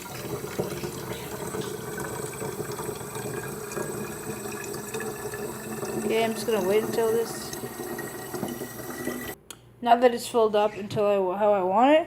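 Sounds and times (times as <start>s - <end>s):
water running into bottle: 0.0s - 9.4s.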